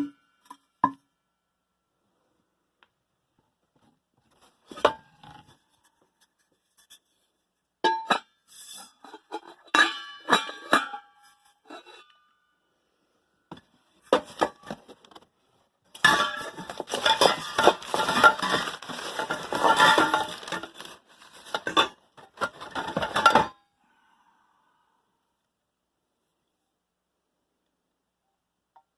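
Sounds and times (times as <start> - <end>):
small metal objects clattering: 16.0 - 23.6.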